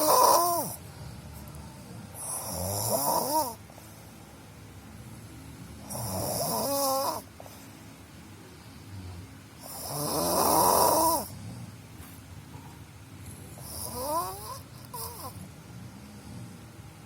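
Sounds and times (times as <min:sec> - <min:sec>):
person snoring: 0:00.0 - 0:00.8, 0:02.2 - 0:03.6, 0:05.8 - 0:07.3, 0:08.9 - 0:11.3, 0:13.6 - 0:15.4.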